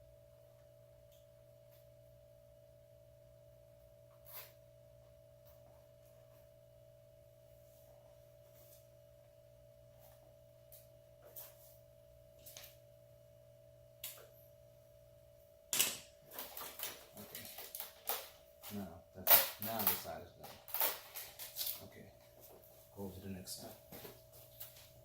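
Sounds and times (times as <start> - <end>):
hands handling wires clicking: 15.8 - 21.9.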